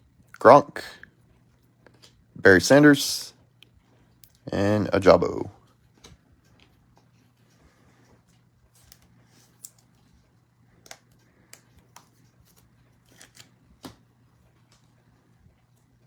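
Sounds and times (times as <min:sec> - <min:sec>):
low steady hum: 0:00.0 - 0:16.0
trading cards clicking and rustling: 0:10.8 - 0:14.1.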